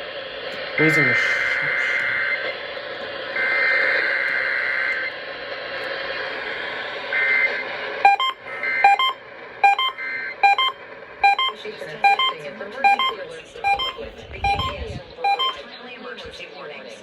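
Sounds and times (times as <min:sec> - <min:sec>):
harsh two-tone data burst: 0:08.1 - 0:15.6
short electronic beeps: 0:08.1 - 0:15.6.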